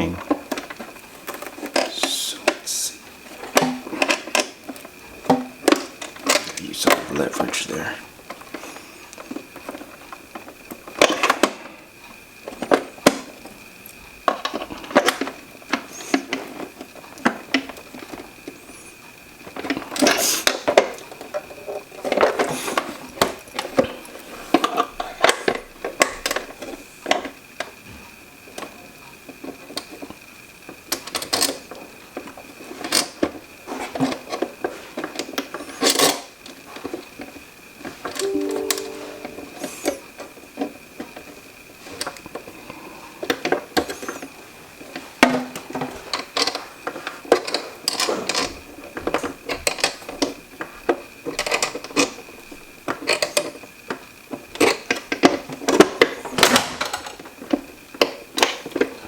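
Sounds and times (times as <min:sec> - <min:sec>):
faint high whine: 0:38.2 - 0:40.2.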